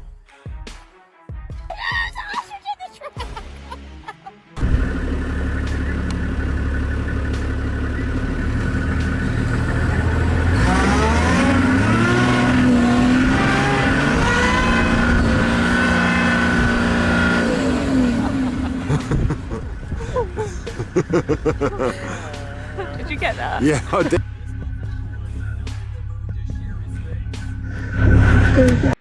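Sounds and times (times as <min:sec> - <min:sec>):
vehicle engine revving: 0:04.6 - 0:29.0.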